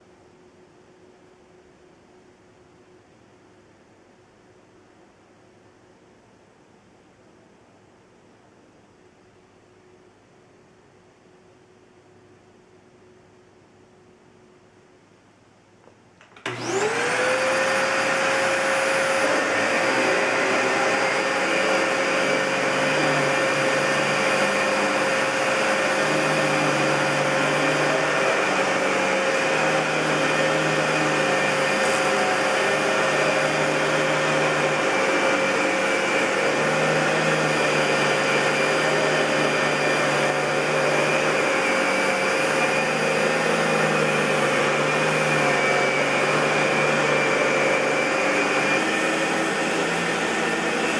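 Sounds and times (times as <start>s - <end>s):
vacuum cleaner running: 16.2s - 50.9s.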